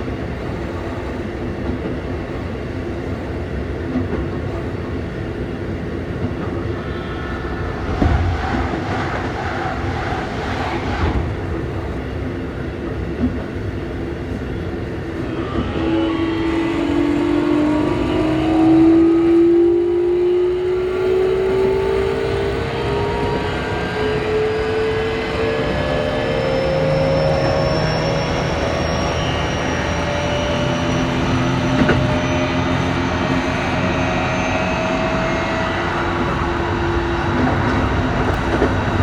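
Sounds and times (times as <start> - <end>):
train motor whine rising in pitch: 6.2 - 11.4, 14.7 - 39.0.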